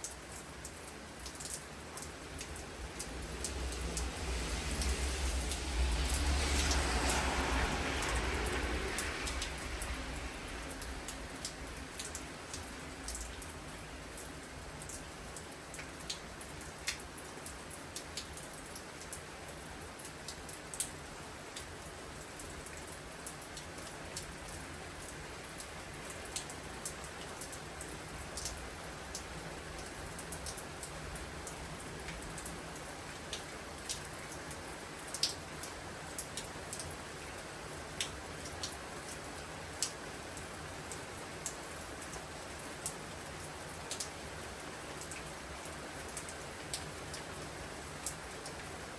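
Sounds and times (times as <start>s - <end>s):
pouring rain hiss: 0.0s - 48.9s.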